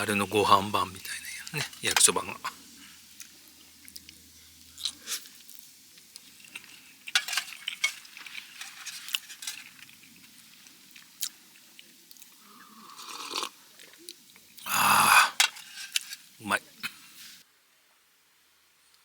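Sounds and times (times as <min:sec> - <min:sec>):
person chewing food: 0:03.2 - 0:08.4, 0:09.1 - 0:15.4.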